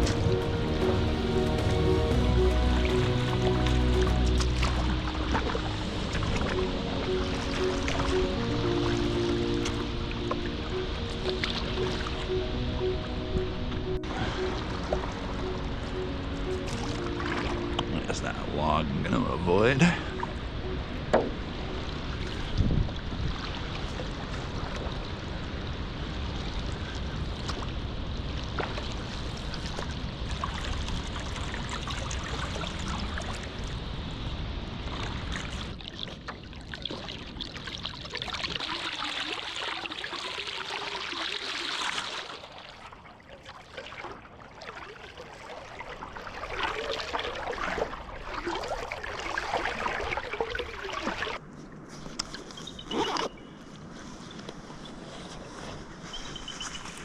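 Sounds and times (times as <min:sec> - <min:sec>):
paddle splashing water: 0:00.0 - 0:33.8, 0:34.8 - 0:53.4
wind rumbling on microphone: 0:00.0 - 0:38.8.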